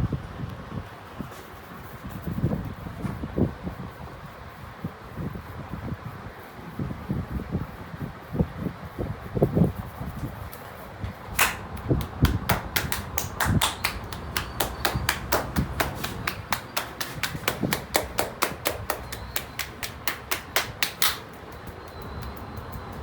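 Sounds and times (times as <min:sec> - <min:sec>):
hands slapping in massage: 0:11.2 - 0:22.4.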